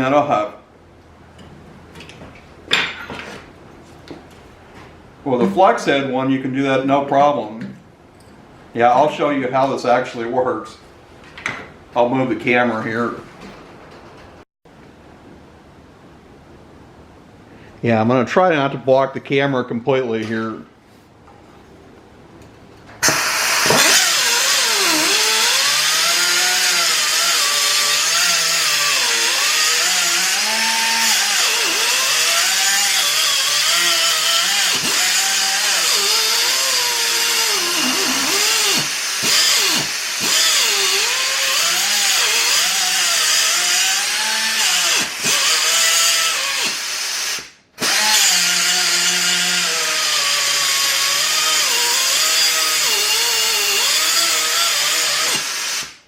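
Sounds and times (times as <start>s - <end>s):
pneumatic cut-off tool whining: 23.0s - 56.0s.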